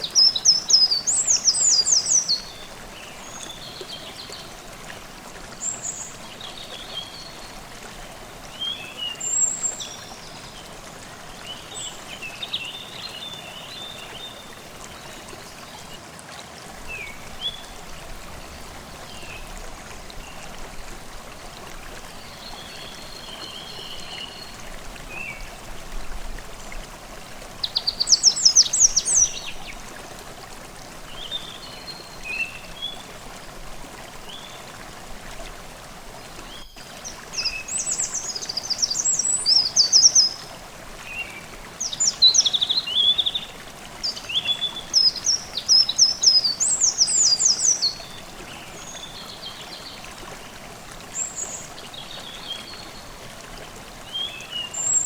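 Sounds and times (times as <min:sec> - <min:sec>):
stream babbling: 0:00.0 - 0:55.0
songbirds trilling: 0:27.6 - 0:29.8.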